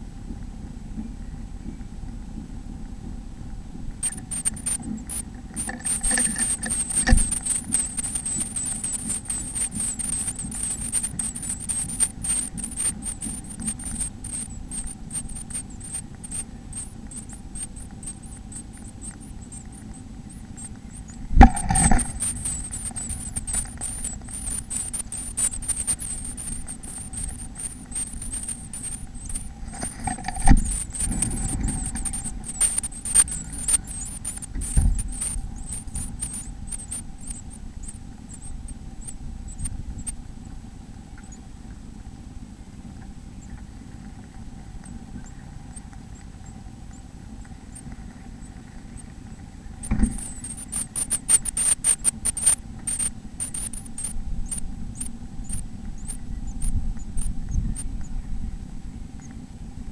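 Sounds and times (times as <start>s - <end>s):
steady low hum: 0.0s - 59.9s
scratching in nest box: 4.0s - 40.1s, 46.9s - 58.1s.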